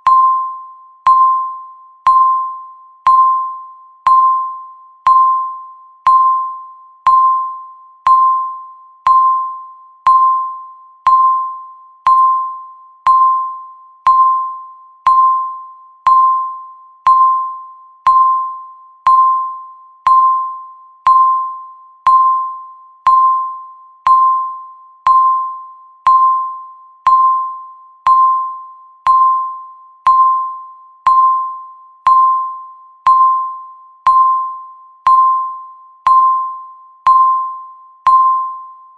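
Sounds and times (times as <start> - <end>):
timer ticking: 11.0 - 19.4, 27.1 - 27.5, 28.1 - 30.5, 31.1 - 31.5, 33.0 - 38.6.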